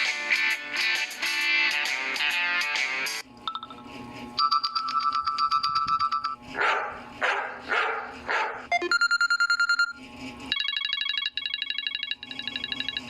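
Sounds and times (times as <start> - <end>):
fast-pulsing electronic beep: 8.7 - 13.0
repeating electronic tone: 8.7 - 13.0.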